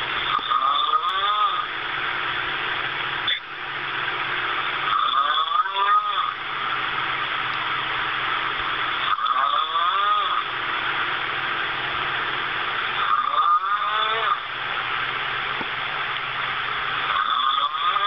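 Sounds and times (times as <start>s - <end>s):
person snoring loudly: 0.3s - 1.7s, 4.8s - 6.4s, 9.0s - 10.5s, 13.0s - 14.5s, 17.0s - 18.0s.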